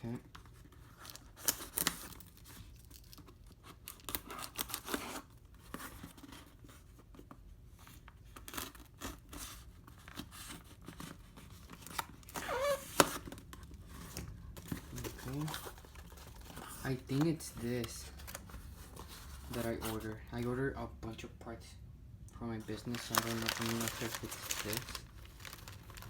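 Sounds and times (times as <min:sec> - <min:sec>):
rustling and crinkling: 0:00.1 - 0:20.5, 0:22.6 - 0:26.0
packaging being torn open: 0:01.0 - 0:05.3, 0:22.7 - 0:26.0.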